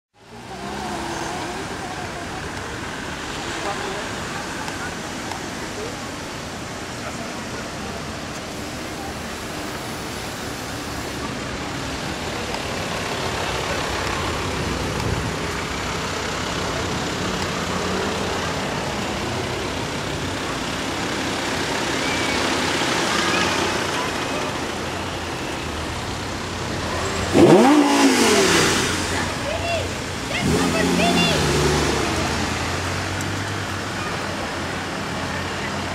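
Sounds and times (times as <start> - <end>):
road noise: 0.0 - 35.9
faint voices: 0.2 - 35.9
passing car engines: 0.2 - 35.9
car engine revving hard: 26.5 - 34.0.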